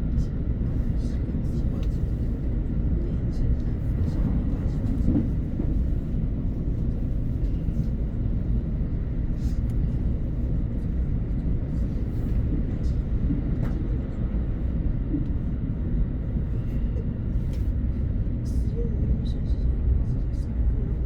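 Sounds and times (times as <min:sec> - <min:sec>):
train running rumble: 0:00.0 - 0:21.0.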